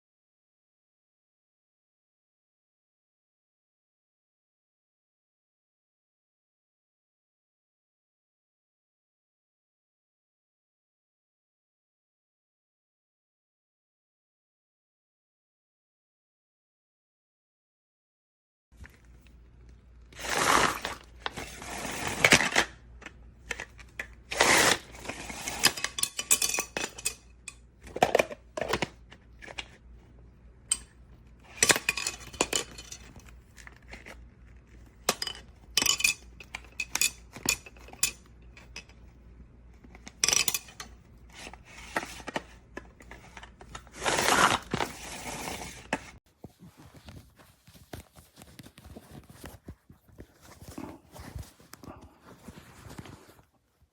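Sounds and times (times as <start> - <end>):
plastic chopper scraping: 20.1 - 27.2, 41.3 - 46.2
plastic food chopper clattering: 20.2 - 22.8, 23.4 - 27.2, 43.1 - 46.1.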